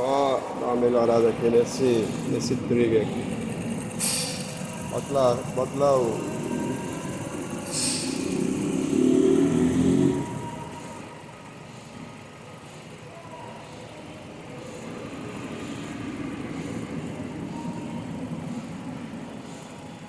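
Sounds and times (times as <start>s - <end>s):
car engine idling with misfires: 0.0s - 20.0s
short hiss: 7.7s - 8.2s.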